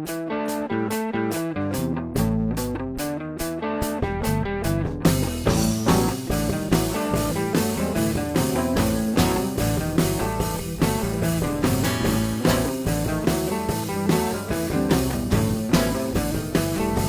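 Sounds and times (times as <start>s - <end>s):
instrumental rock band playing: 0.0s - 17.0s.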